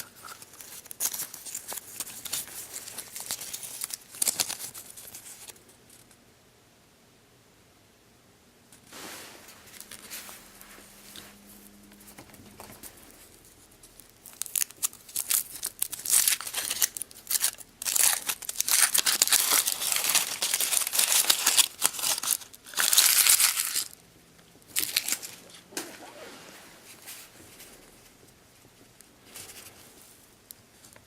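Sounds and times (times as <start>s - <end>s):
wrapping crinkling and tearing: 0.0s - 6.0s, 12.0s - 24.0s, 24.6s - 25.6s.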